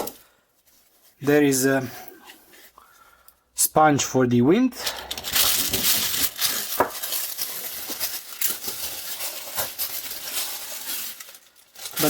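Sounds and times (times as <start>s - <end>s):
plastic bags crinkling: 0.0s - 1.3s, 4.8s - 12.0s.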